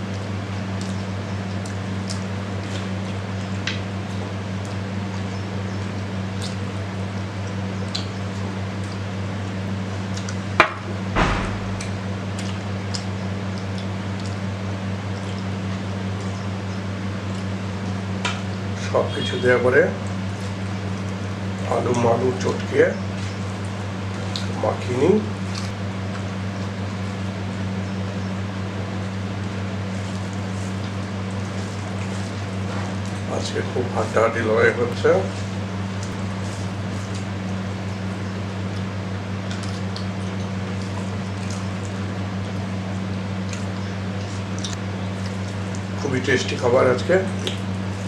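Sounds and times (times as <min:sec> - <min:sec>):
low electrical hum: 0:00.0 - 0:48.0
sharp click: 0:11.2 - 0:12.1
short clatter: 0:11.2 - 0:12.1
faint eating clicks: 0:47.3 - 0:47.7.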